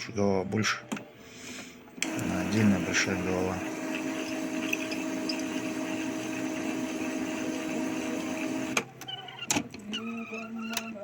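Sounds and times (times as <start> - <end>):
printer click: 2.0 - 3.1
printer pump motor whirring: 2.0 - 8.9.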